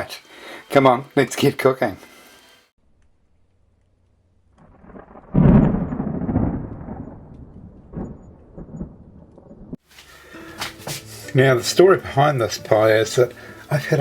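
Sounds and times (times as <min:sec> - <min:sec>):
deep thunder-like rumble: 0:04.6 - 0:09.8.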